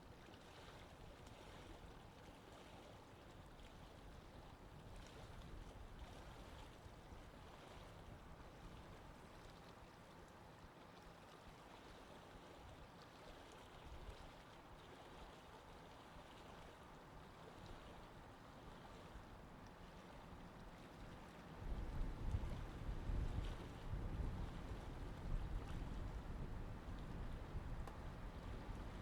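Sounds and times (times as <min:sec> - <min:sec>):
faint wash of sea water: 0:00.0 - 0:29.0
wind buffeting microphone: 0:21.6 - 0:29.0.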